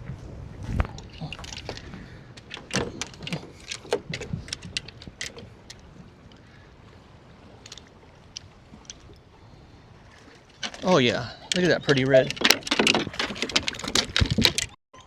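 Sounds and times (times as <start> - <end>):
sharp knocks and clicks: 11.5 - 14.8.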